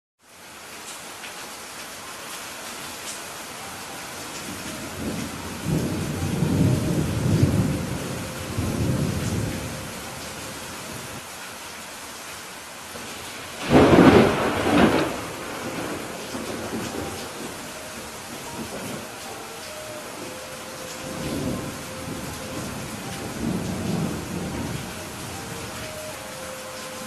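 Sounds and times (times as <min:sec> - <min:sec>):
steady rain hiss: 0:00.2 - 0:27.0
rolling thunder rumble: 0:04.4 - 0:11.2, 0:13.5 - 0:19.3, 0:21.0 - 0:25.9
sharp thunderclap: 0:13.6 - 0:17.4.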